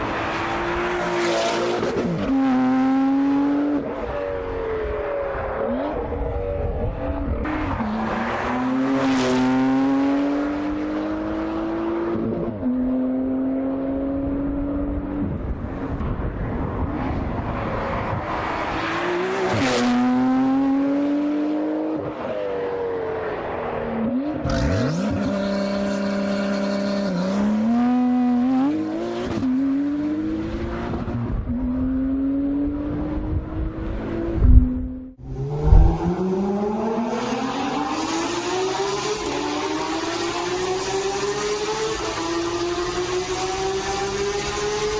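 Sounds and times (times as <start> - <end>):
car engine accelerating through gears: 0.0 - 4.3, 5.7 - 15.4, 17.5 - 22.5, 24.1 - 44.9
high-pitched engine revving: 24.4 - 29.6
exhaust bangs: 24.5 - 29.4.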